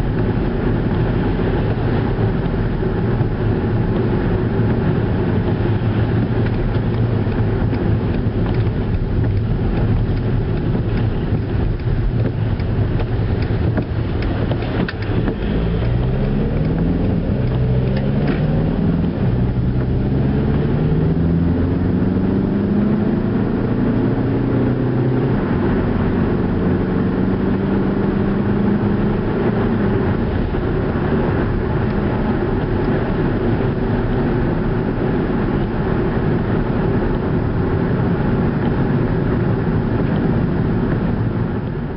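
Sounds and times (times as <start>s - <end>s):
car engine accelerating: 0.0s - 41.9s
road noise: 0.0s - 41.9s.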